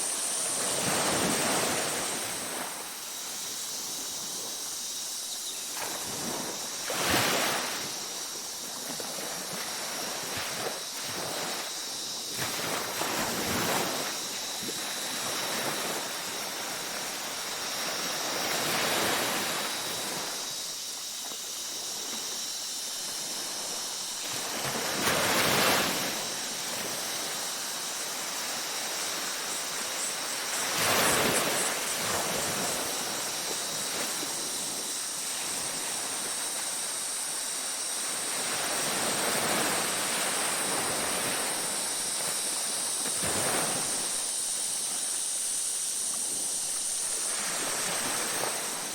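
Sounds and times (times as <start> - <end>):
night insects chirring: 0.0 - 48.9
ocean waves breaking: 5.8 - 20.5, 47.0 - 48.9.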